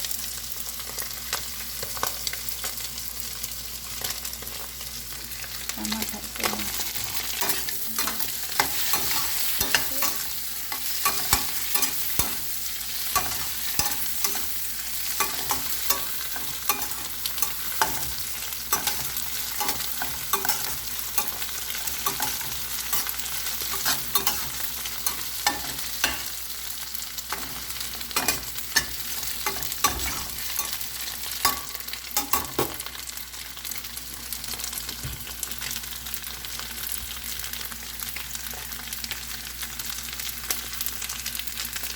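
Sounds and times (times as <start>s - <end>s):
food sizzling in a pan: 0.0s - 41.9s
spatula scraping a pan: 7.0s - 26.5s, 27.2s - 32.8s.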